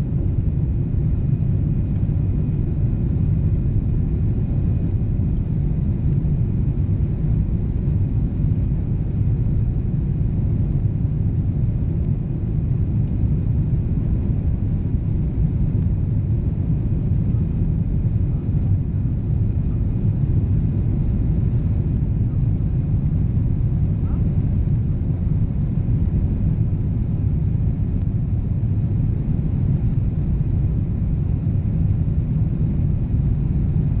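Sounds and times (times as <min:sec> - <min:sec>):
jet engines rumbling in cabin: 0:00.0 - 0:34.0.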